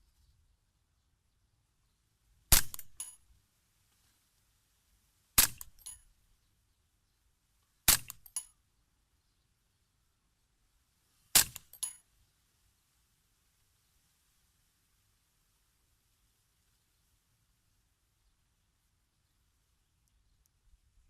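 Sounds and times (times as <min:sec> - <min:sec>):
suppressed rifle shots: 0:02.5 - 0:03.2, 0:05.4 - 0:06.0, 0:07.9 - 0:08.4, 0:11.4 - 0:11.9.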